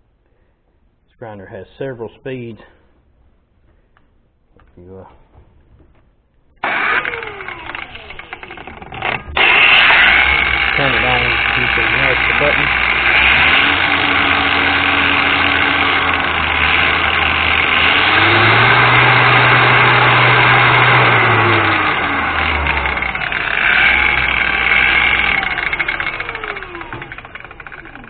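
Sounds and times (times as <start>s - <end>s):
angle grinder running: 6.6s - 28.0s.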